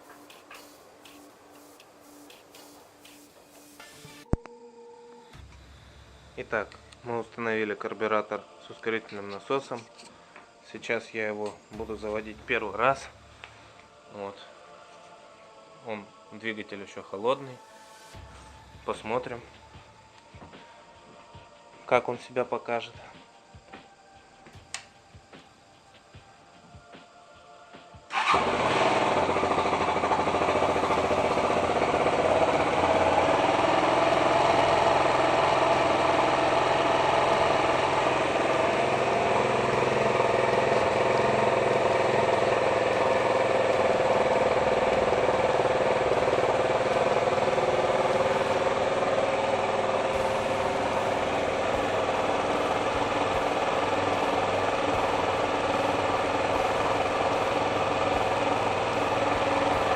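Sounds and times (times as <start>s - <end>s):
motorcycle engine starting and idling: 11.7s - 13.5s, 28.1s - 59.9s.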